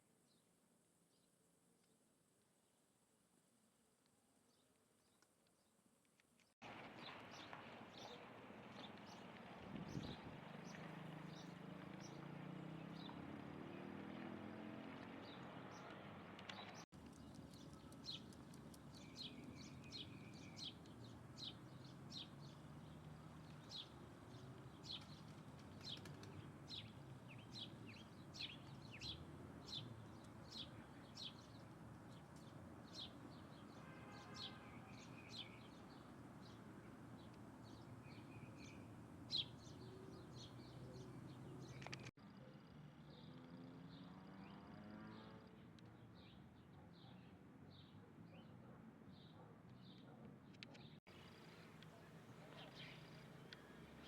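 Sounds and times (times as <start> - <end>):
small birds chirping: 9.8 - 44.7, 45.8 - 54.0.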